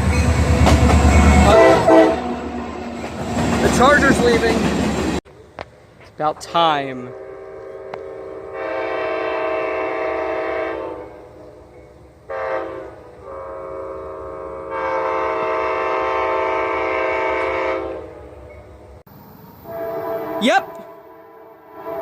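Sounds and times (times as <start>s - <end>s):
locomotive air horn chord: 0.1s - 3.0s, 7.0s - 11.7s, 12.3s - 18.4s, 19.6s - 22.0s.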